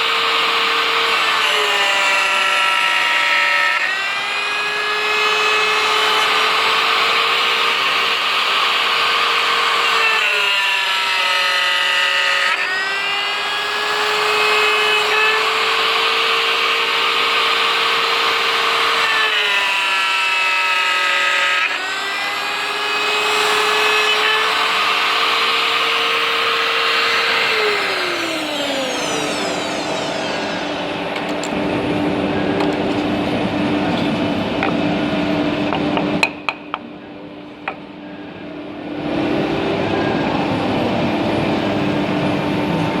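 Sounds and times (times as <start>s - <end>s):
router spindle whining milling wood: 0.0s - 33.8s.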